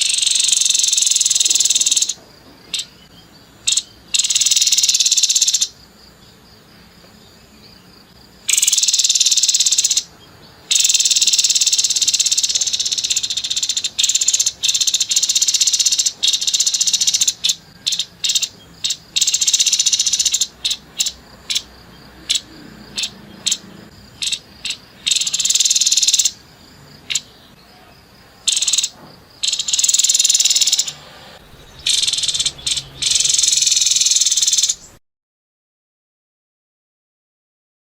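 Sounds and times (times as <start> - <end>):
bird rasping rattle calls: 3.7 - 5.8, 10.7 - 23.6, 24.2 - 26.4, 28.5 - 35.0.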